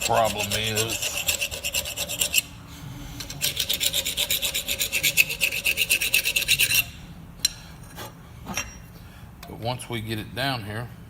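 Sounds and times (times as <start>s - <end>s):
hand file rasping on steel: 0.0s - 2.5s, 3.2s - 7.0s.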